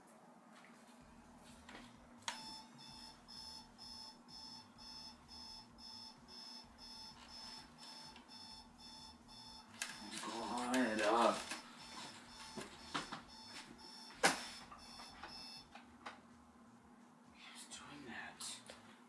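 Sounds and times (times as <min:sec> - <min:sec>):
electronic alarm beeping: 0:02.3 - 0:15.7.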